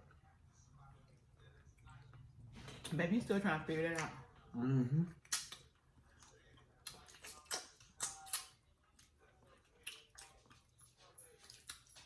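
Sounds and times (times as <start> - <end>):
mouth chewing with wet clicks: 5.1 - 12.0.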